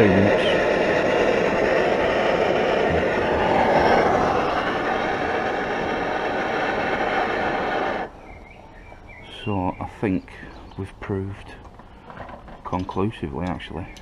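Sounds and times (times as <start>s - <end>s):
water boiling: 0.0s - 8.1s
gas stove roaring: 0.0s - 8.2s.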